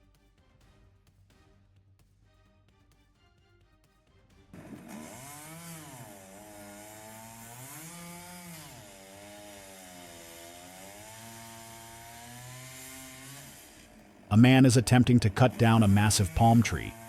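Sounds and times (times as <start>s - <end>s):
chainsaw running at high revs: 4.6s - 17.0s.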